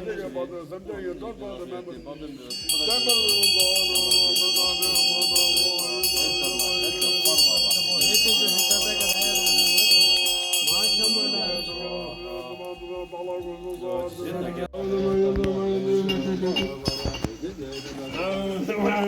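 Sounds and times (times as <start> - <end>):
chanted mantra: 0.0 - 19.0
rapid jingling: 2.5 - 14.0
ringing bells: 2.5 - 14.9, 15.6 - 19.0.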